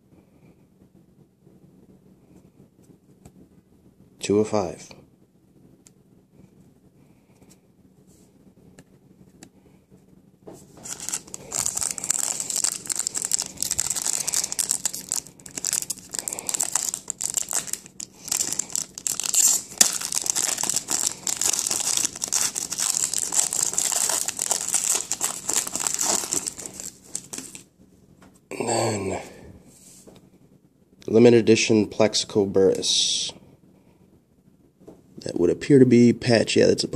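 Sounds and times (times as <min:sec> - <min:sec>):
foil wrapper tearing and crinkling: 0:10.8 - 0:27.6.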